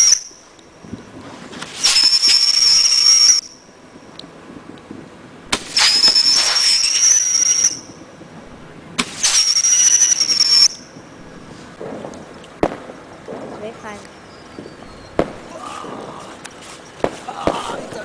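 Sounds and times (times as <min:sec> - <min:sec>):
firework shrill whistle: 0:00.0 - 0:03.8, 0:05.5 - 0:08.1, 0:09.0 - 0:11.7.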